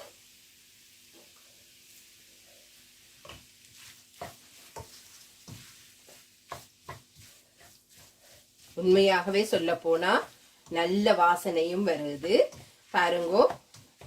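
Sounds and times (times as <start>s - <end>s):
food sizzling in a frying pan: 0.0s - 14.0s
spoon knocking and scraping pan: 3.1s - 14.0s.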